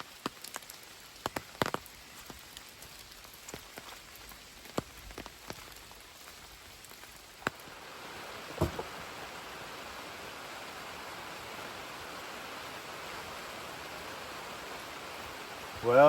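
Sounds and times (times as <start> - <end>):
rain falling: 0.0 - 16.0
dull knock: 8.5 - 9.0.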